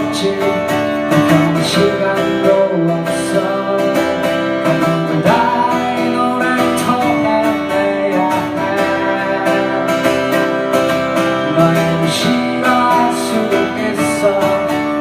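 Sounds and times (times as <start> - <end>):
acoustic guitar strumming: 0.0 - 15.0
person singing: 0.0 - 15.0.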